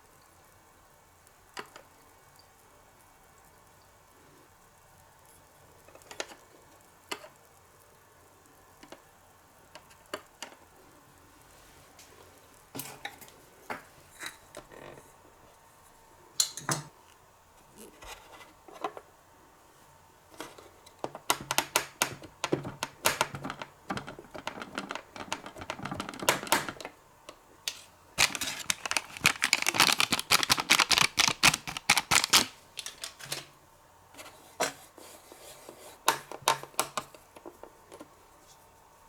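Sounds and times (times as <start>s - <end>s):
utensils tapping toy dishes: 21.1s - 26.9s, 27.7s - 33.4s.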